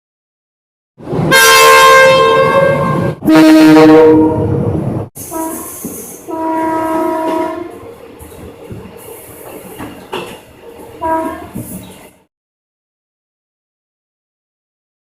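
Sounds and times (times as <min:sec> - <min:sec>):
train running noise: 0:01.0 - 0:12.3
locomotive horn blast: 0:01.3 - 0:07.8, 0:11.0 - 0:11.6.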